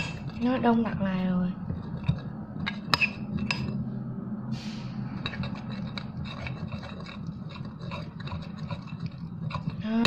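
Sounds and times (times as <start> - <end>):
utensil clinking against bowl: 0.0 - 1.0, 1.7 - 3.8, 5.2 - 10.0
utensil scraping bowl: 0.0 - 3.9, 5.0 - 10.0.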